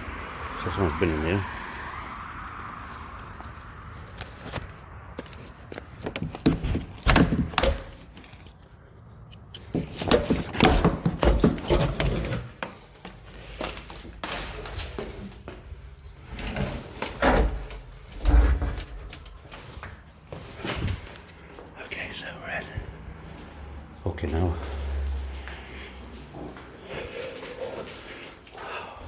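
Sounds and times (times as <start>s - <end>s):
person clambering knocks and scraping: 3.4s - 21.7s.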